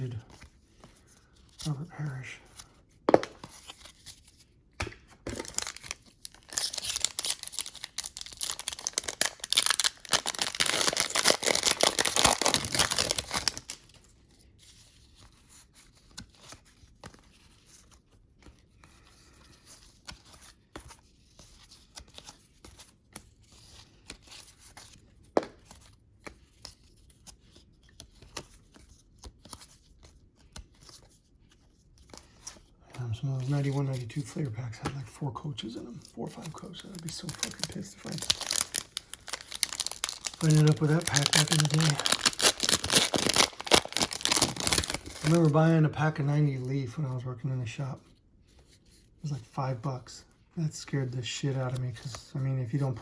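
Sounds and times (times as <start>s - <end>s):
cards clicking and rustling: 2.5s - 14.0s, 21.5s - 32.6s, 33.4s - 45.6s
wrapper tearing and crinkling: 5.3s - 13.9s, 35.7s - 45.6s.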